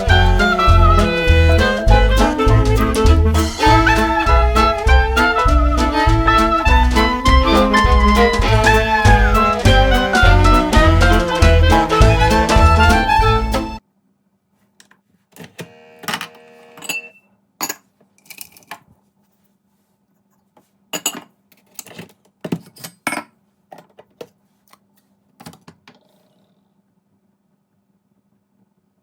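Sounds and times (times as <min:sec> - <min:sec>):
kitchenware clinks and taps: 0:16.8 - 0:18.8, 0:21.0 - 0:24.0.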